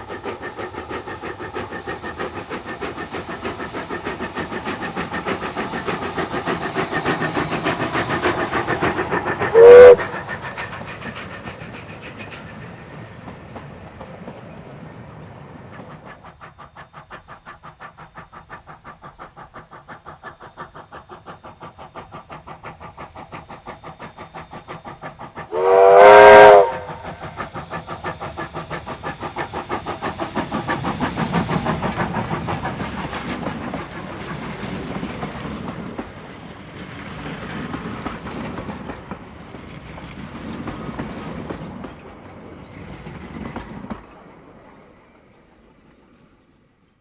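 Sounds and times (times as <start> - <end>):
train clatter: 0.0 - 46.5
steam locomotive chuffing: 0.0 - 46.6
steam whistle blast: 9.4 - 10.3, 25.5 - 27.4.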